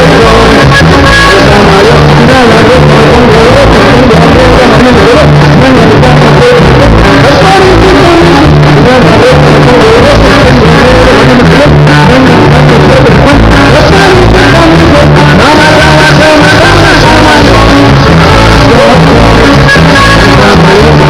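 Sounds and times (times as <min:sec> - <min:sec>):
bass line: 0:00.0 - 0:21.0
person singing: 0:00.0 - 0:21.0.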